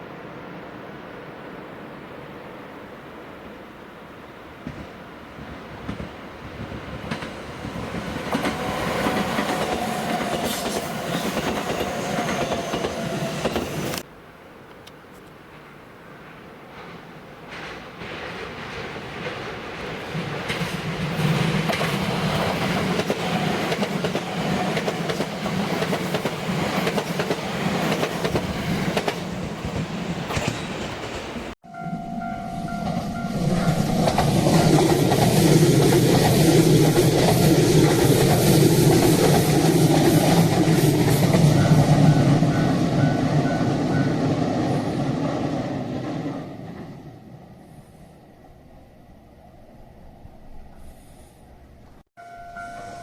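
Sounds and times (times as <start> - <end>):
electric train running past: 0.0 - 14.1, 15.5 - 50.9, 51.6 - 53.0
level-crossing warning bell: 31.6 - 34.4, 41.4 - 44.4, 52.2 - 53.0.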